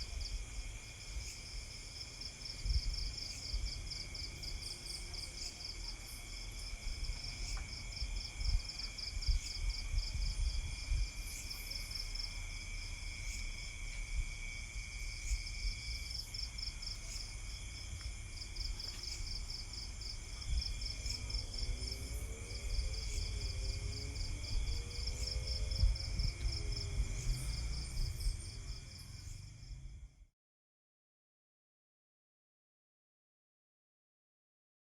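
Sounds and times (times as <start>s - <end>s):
insects pulsing chirp: 0.0s - 30.2s
low rumble: 19.4s - 30.2s.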